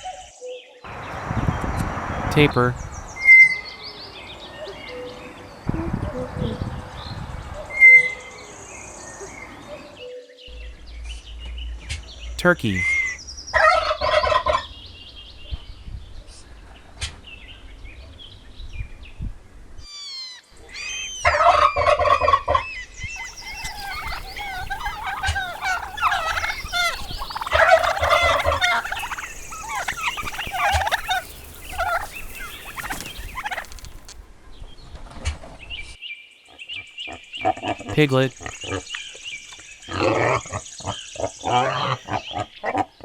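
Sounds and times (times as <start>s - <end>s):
turkeys gobbling: 23.2s - 34.2s.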